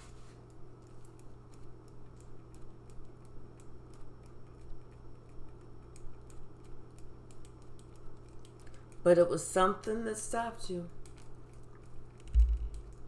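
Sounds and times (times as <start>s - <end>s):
steady low hum: 12.2s - 13.0s.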